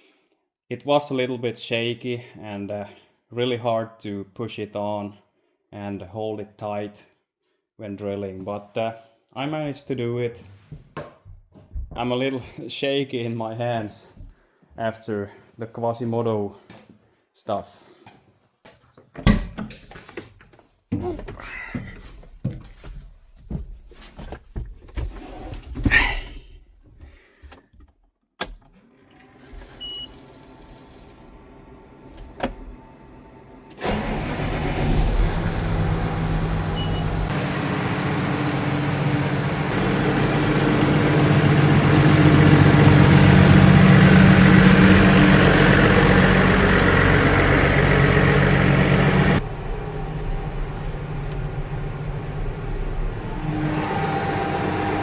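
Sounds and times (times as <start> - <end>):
machine motor running: 33.8 - 55.0.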